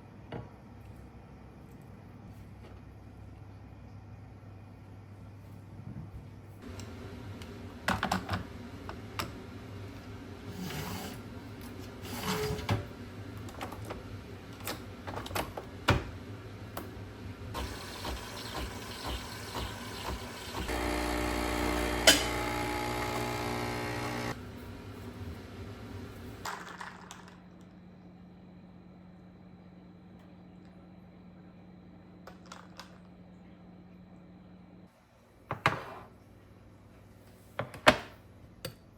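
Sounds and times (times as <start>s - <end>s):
steady machine hum: 15.8s - 26.4s.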